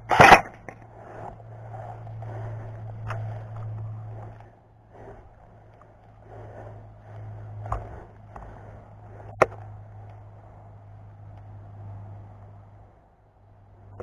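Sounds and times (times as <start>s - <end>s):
sharp crack: 0.0s - 1.2s
steady low hum: 0.0s - 14.0s.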